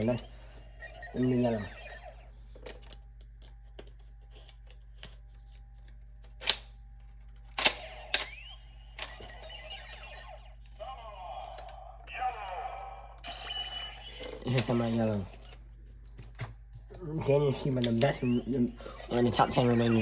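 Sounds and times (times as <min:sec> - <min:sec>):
electronic toy sound effects: 0:00.0 - 0:02.5, 0:07.6 - 0:15.6, 0:17.2 - 0:20.0
gliding electronic tones: 0:07.8 - 0:10.7, 0:17.1 - 0:20.0.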